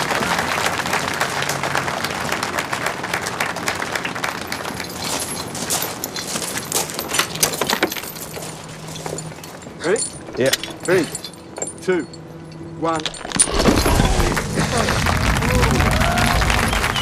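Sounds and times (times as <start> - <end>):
crowd applause: 0.0 - 5.7, 13.6 - 17.0
keys clicking on metal: 4.8 - 13.5.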